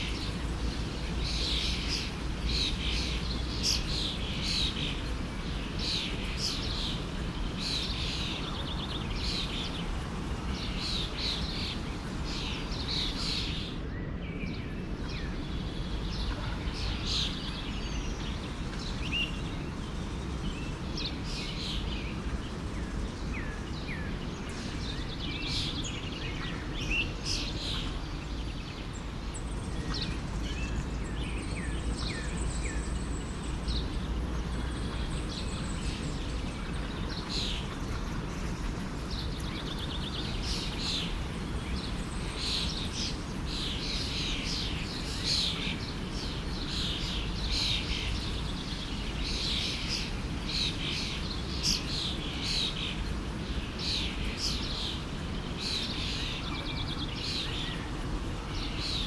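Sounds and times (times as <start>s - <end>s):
small birds chirping: 0.0s - 13.8s, 14.4s - 59.0s
flowing stream: 14.9s - 59.0s.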